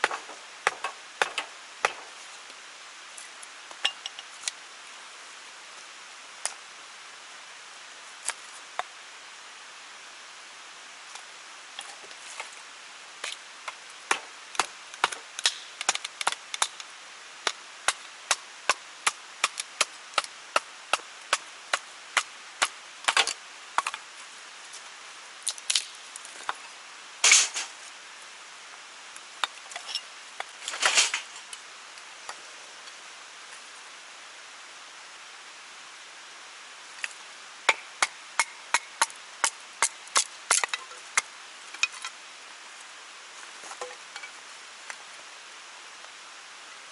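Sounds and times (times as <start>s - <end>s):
blade chopping wood: 0.0s - 2.2s, 13.7s - 16.8s
steady rushing hiss: 0.0s - 46.9s.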